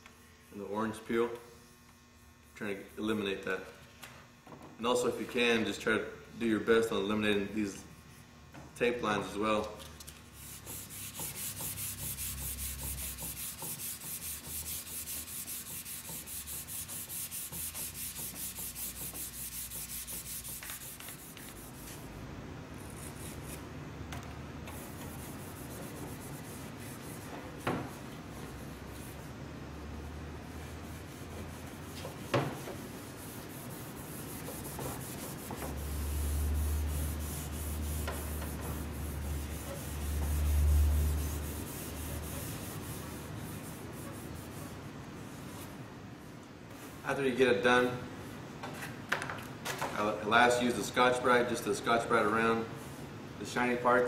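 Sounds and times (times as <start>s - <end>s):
sandpaper rasping on clear coat: 10.3s - 22.1s, 24.7s - 29.3s, 30.6s - 45.7s.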